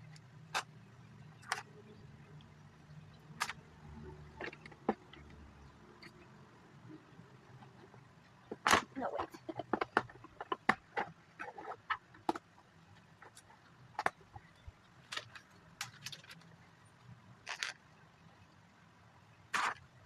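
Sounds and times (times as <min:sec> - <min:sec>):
plastic bricks clicking: 0:08.5 - 0:14.4.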